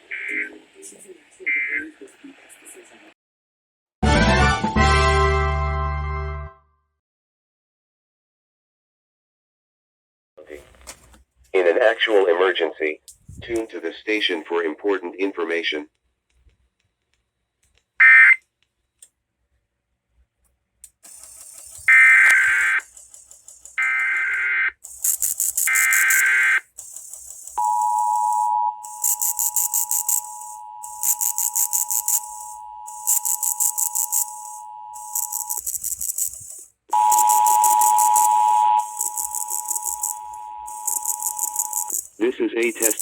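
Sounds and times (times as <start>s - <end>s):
screeching digital data bursts: 21.1s - 43.0s
two-tone attention signal: 27.6s - 36.3s, 36.9s - 42.0s
pulsing high hiss: 28.8s - 43.0s.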